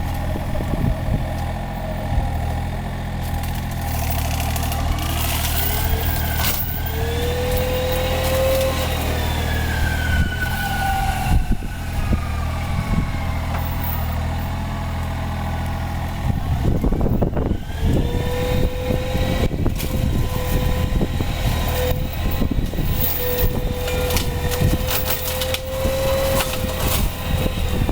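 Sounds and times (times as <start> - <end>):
excavator engine drone: 0.0 - 27.9
mulcher rotor whine: 0.0 - 27.9.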